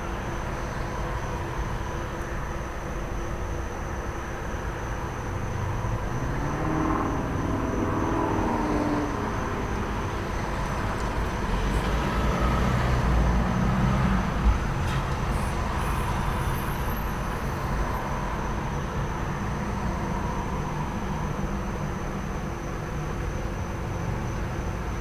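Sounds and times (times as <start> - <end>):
traffic rumble: 0.0 - 25.0
crickets trilling: 0.2 - 25.0
vehicle passing: 5.6 - 15.6.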